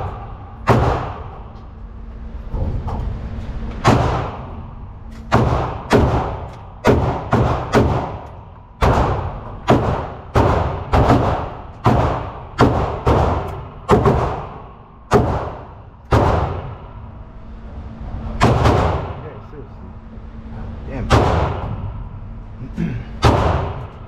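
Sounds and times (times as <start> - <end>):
gunshots with echo: 0.0 - 1.5, 3.8 - 4.5, 5.3 - 17.0, 18.4 - 19.3, 21.0 - 22.0, 23.2 - 24.0.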